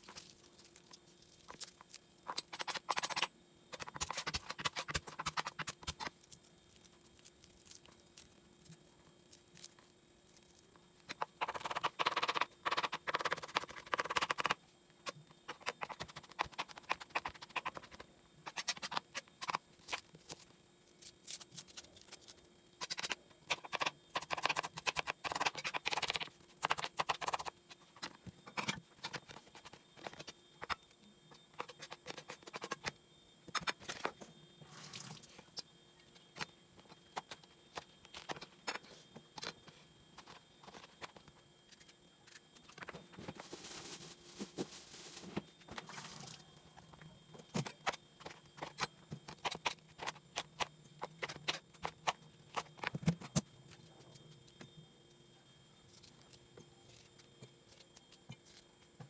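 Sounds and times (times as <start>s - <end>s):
rustling: 43.3s - 46.2s.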